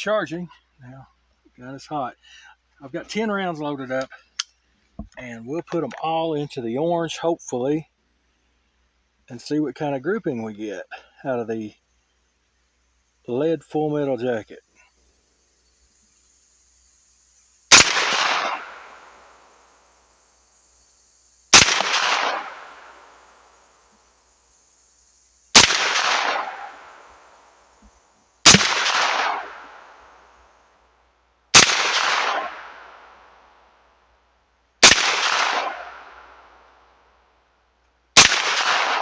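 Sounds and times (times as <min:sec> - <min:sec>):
gunshots with echo: 0:17.7 - 0:19.2, 0:21.6 - 0:23.1, 0:25.6 - 0:27.0, 0:28.5 - 0:30.0, 0:31.6 - 0:33.1, 0:34.8 - 0:36.3, 0:38.2 - 0:39.0.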